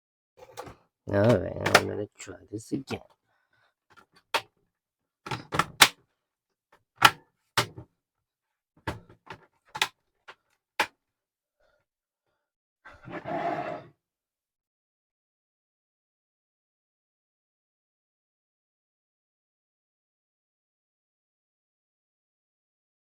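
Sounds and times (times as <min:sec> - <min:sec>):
laptop plastic case clicking: 0:01.6 - 0:01.9, 0:05.3 - 0:06.0, 0:07.0 - 0:07.8, 0:08.9 - 0:09.9.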